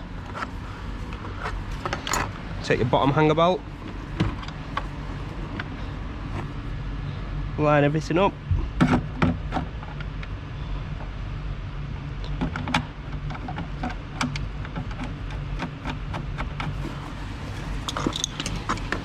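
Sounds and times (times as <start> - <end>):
steady low hum: 0.0 - 19.0
seat belt hardware clicks and knocks: 12.2 - 19.0.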